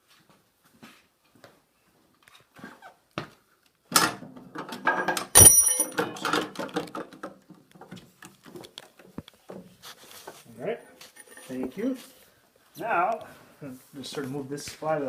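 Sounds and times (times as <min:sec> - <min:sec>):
wooden parts clattering and knocking: 0:04.0 - 0:09.8
metallic clang: 0:04.9 - 0:06.4.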